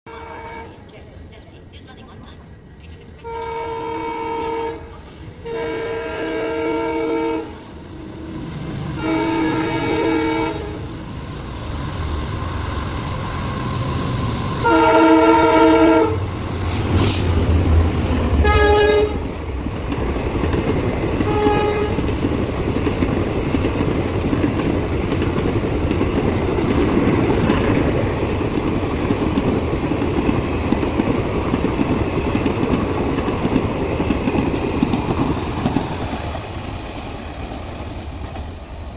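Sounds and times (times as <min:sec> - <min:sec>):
locomotive horn blasts: 0:00.1 - 0:00.8, 0:03.2 - 0:07.7, 0:09.0 - 0:10.8, 0:14.6 - 0:16.2, 0:18.4 - 0:19.2, 0:21.3 - 0:22.0
deep locomotive rumble: 0:00.1 - 0:38.9
train coaches clattering on rails: 0:08.4 - 0:38.9.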